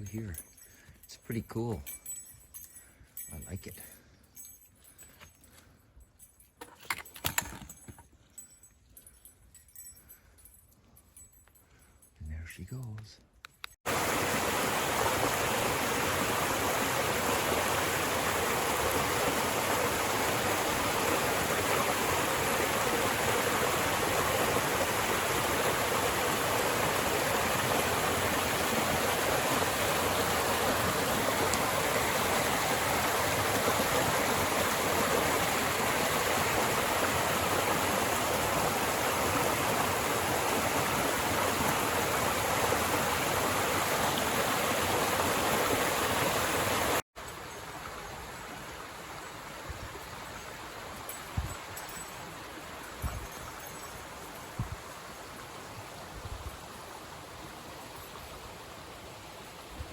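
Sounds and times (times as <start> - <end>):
rushing water: 13.8 - 59.9.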